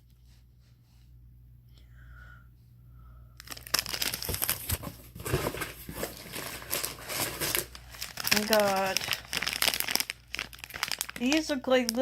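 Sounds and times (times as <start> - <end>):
plastic wrappers crinkling: 3.4 - 12.0.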